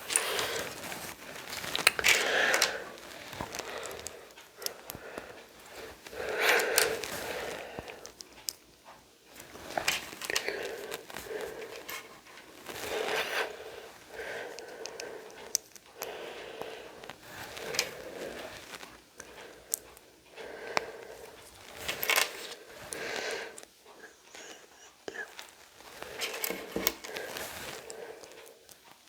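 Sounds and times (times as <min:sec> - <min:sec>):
packaging crinkling: 0:00.0 - 0:08.6
plastic pieces clicking: 0:00.0 - 0:08.6, 0:21.7 - 0:22.6.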